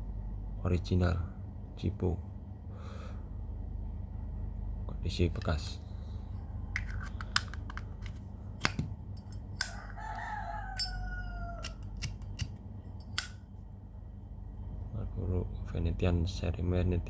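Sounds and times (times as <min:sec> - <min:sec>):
metal lighter clicking and tapping: 0:06.8 - 0:07.8, 0:10.8 - 0:11.0, 0:11.6 - 0:13.4
rooster crowing: 0:09.6 - 0:12.2.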